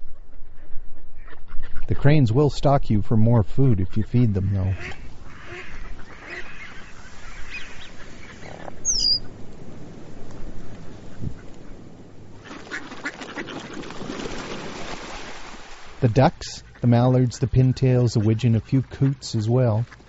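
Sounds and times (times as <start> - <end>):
ducks quacking: 3.7 - 9.4, 12.4 - 14.0, 16.0 - 20.0.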